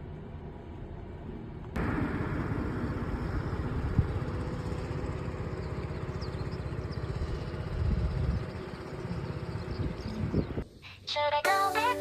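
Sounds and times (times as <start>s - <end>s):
car engine idling: 1.8s - 10.6s.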